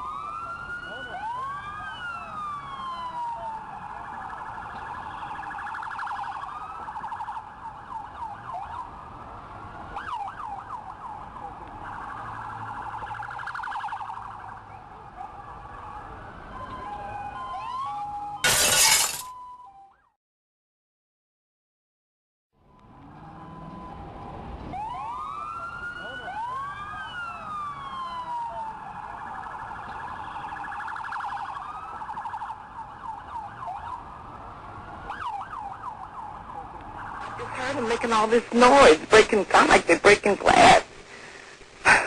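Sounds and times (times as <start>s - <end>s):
emergency sirens wailing: 0.0s - 18.5s, 22.6s - 40.8s
glass shattering crash: 18.4s - 19.3s.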